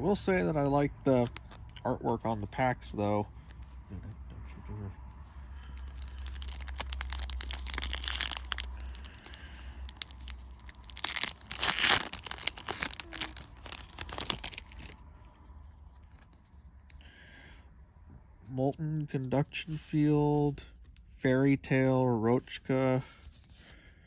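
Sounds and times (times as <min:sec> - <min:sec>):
foil pack tearing and crinkling: 0:05.7 - 0:15.0.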